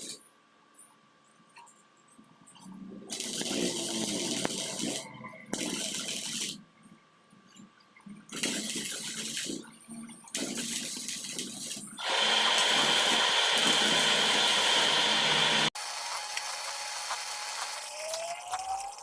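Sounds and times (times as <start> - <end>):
welding arc hissing and crackling: 3.1 - 6.6, 8.3 - 19.0.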